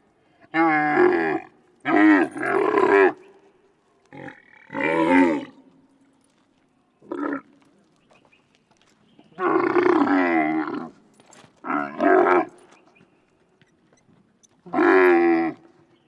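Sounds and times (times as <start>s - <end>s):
camel grunting: 0.5s - 3.3s, 4.1s - 5.7s, 7.0s - 7.7s, 9.4s - 12.8s, 14.5s - 15.8s.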